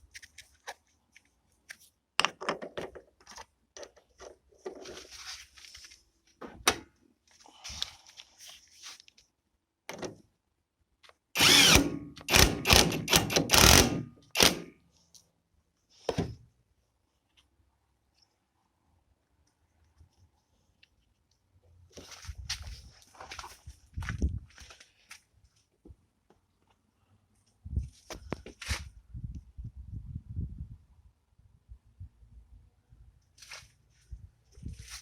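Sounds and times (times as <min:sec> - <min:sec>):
tools clicking and knocking: 0:11.7 - 0:14.7.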